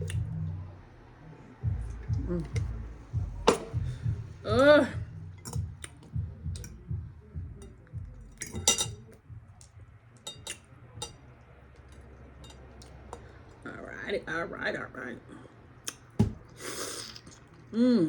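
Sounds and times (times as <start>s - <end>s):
mouth smacking and chewing: 5.5s - 6.7s, 15.8s - 17.7s.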